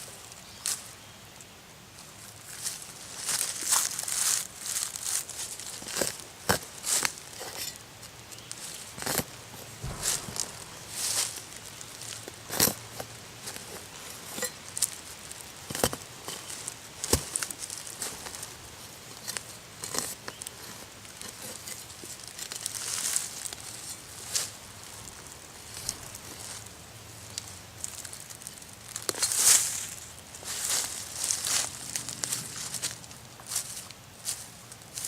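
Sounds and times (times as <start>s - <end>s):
dry leaves rustling: 1.9s - 35.0s
sharp knocks: 9.8s - 11.6s.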